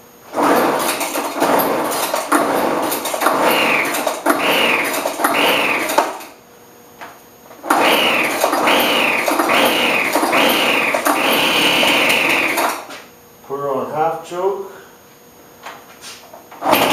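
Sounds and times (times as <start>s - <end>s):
engine turning over whirr: 0.0s - 6.4s, 7.0s - 13.1s, 16.0s - 16.9s
recoil starter cord pulls: 0.3s - 6.3s, 7.6s - 12.9s, 16.5s - 16.9s.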